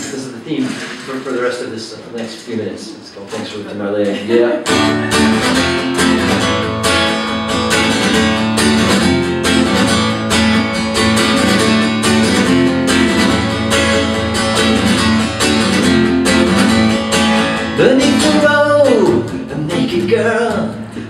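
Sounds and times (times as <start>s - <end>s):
acoustic guitar strumming: 4.4s - 21.0s.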